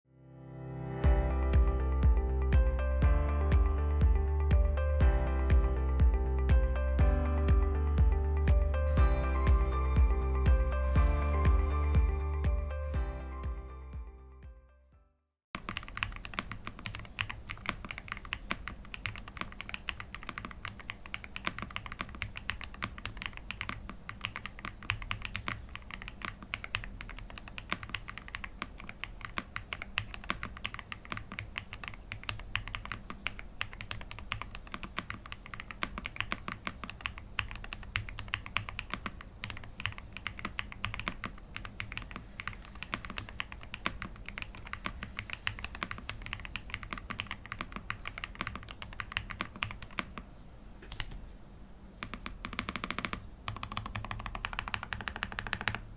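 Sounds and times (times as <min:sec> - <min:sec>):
fast typing on mechanical keyboard: 0:15.6 - 0:50.3, 0:52.0 - 0:55.9.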